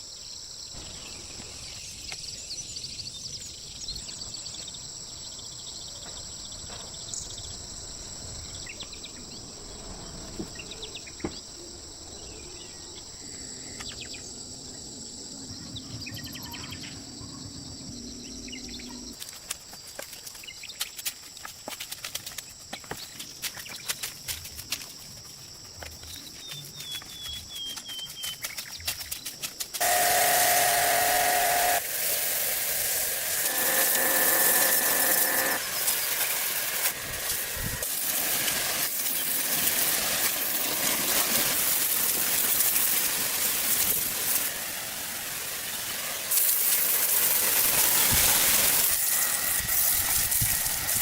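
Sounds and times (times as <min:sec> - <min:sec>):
bird chirps: 0:15.6 - 0:19.1, 0:26.1 - 0:29.3
insect trilling: 0:22.6 - 0:44.5.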